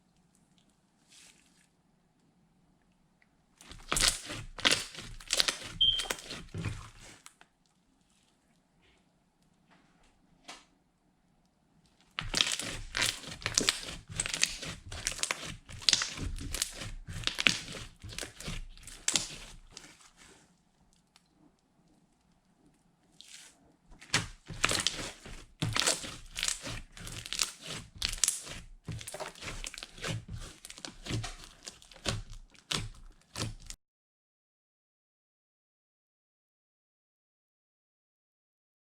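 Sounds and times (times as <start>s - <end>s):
slime squished by hand: 3.6s - 7.3s, 12.1s - 21.1s, 23.1s - 33.8s.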